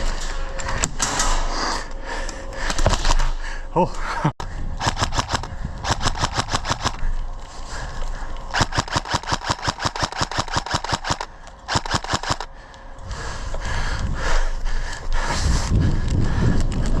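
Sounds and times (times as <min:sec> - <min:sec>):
airsoft gun firing bursts: 0:04.8 - 0:07.0, 0:08.5 - 0:12.5.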